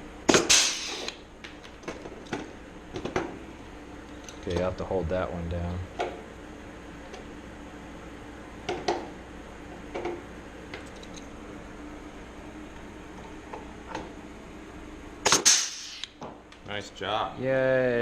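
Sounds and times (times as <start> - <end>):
rivet snapping: 15.3 - 16.2.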